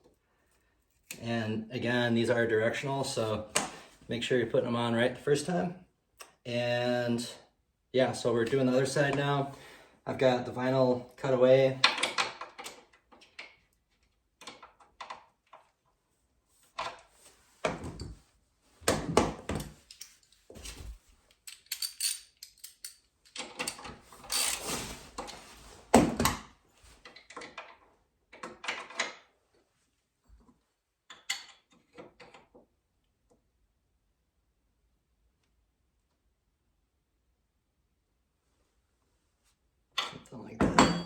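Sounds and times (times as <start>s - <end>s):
metal hardware clinking and scraping: 19.6s - 25.4s.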